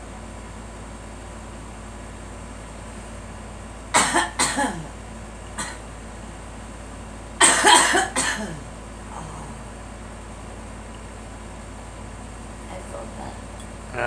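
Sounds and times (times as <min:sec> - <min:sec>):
girl coughing: 0:04.0 - 0:04.9, 0:05.6 - 0:05.8, 0:07.4 - 0:08.7.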